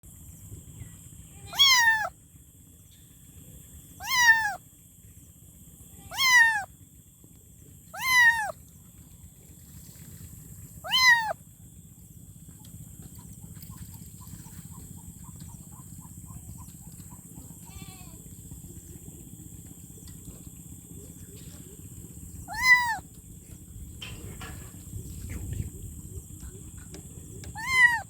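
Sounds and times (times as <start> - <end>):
kitten meowing: 1.5 - 2.1, 4.0 - 4.6, 6.1 - 6.7, 7.9 - 8.6, 10.8 - 11.4, 22.5 - 23.0, 27.5 - 28.0.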